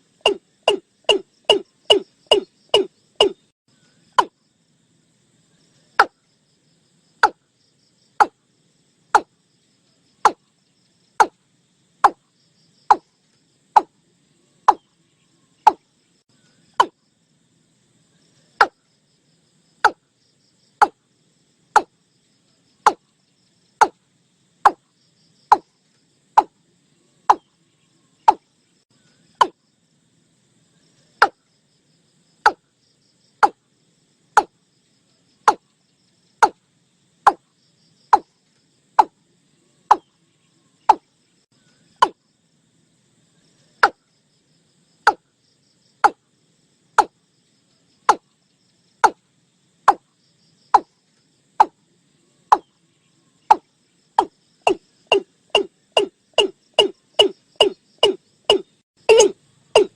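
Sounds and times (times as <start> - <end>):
bird calling sharp notes: 0.2 - 3.5, 54.7 - 59.9.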